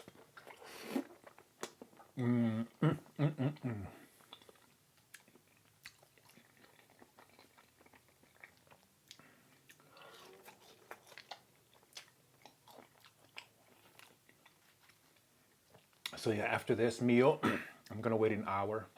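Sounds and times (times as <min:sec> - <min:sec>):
chewing with mouth smacks: 0:00.0 - 0:02.2, 0:04.2 - 0:16.2.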